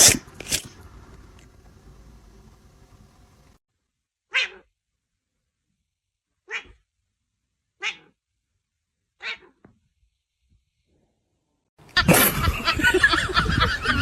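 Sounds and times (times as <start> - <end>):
pet animal sharp noises: 4.3 - 4.7, 6.5 - 6.8, 7.8 - 8.2, 9.2 - 9.6.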